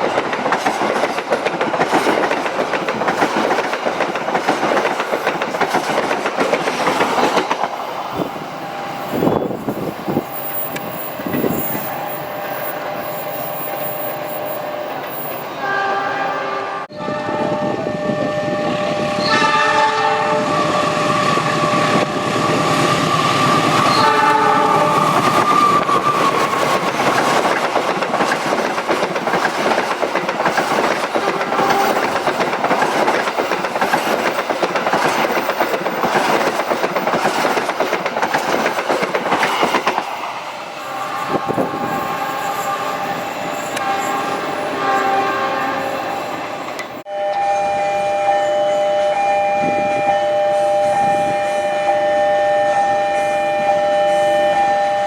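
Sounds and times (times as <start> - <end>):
train wheels rattling over rail joints: 0.0 - 7.9, 24.6 - 40.4
train horn: 15.5 - 26.4, 31.2 - 32.2, 40.8 - 46.3, 47.1 - 55.0.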